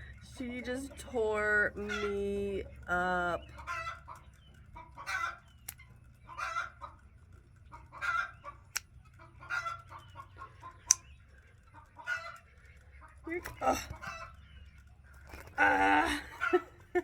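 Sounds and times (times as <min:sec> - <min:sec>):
chickens clucking: 0:00.0 - 0:17.0
sharp clicks: 0:05.5 - 0:06.0, 0:08.7 - 0:09.1, 0:10.8 - 0:11.2.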